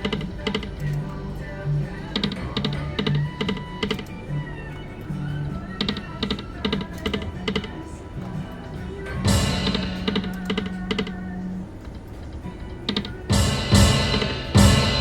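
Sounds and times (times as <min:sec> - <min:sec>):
electronic game music: 0:00.0 - 0:11.8, 0:12.5 - 0:15.0
clicking ticks: 0:04.8 - 0:09.1, 0:11.8 - 0:13.3.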